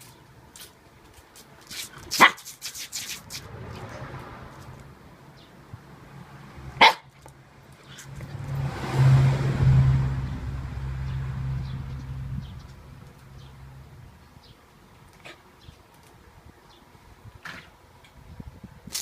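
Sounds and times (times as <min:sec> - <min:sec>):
dog barking sharply: 0:02.1 - 0:02.5, 0:06.8 - 0:07.1.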